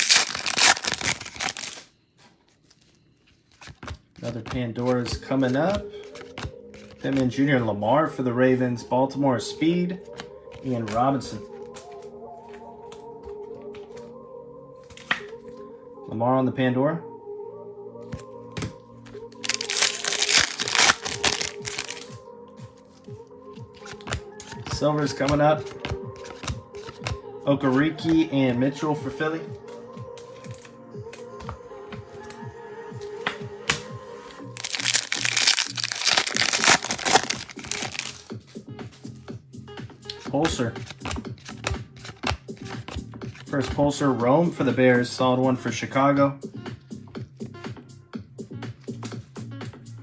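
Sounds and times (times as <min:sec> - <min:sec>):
foil wrapper crinkling and tearing: 0:00.0 - 0:01.9, 0:19.4 - 0:22.2, 0:34.6 - 0:38.3
quiet background music: 0:00.0 - 0:50.0.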